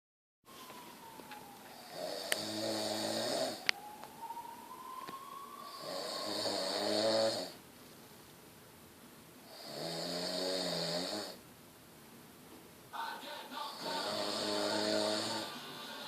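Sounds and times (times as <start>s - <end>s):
man snoring: 1.8s - 3.6s, 5.6s - 7.6s, 9.5s - 11.4s, 13.7s - 15.6s.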